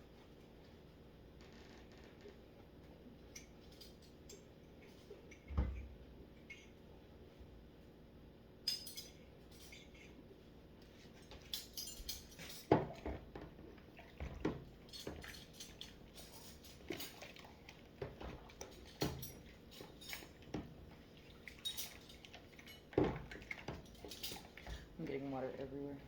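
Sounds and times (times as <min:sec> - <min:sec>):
dishes and cutlery clinking: 0:08.6 - 0:10.2, 0:11.3 - 0:20.8
water dripping and splashing: 0:12.5 - 0:25.2.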